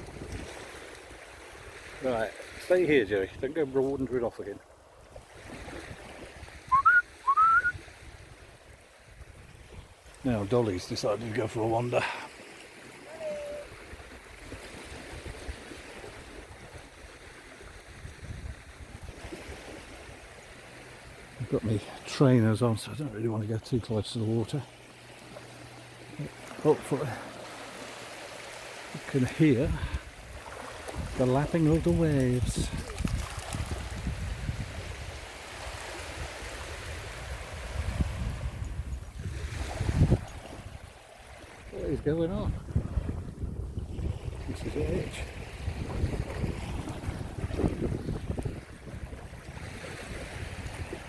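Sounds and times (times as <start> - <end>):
small waves washing on beach: 0.0 - 51.0
wind buffeting microphone: 17.6 - 20.2, 29.6 - 40.9, 41.6 - 51.0.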